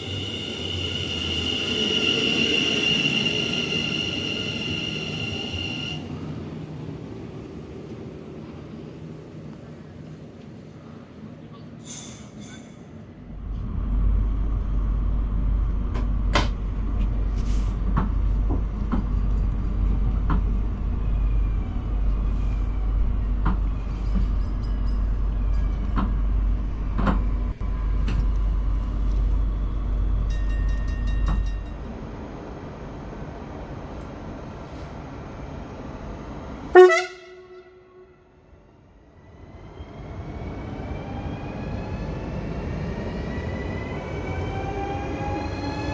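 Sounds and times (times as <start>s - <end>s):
train rumbling past: 0.0s - 45.9s.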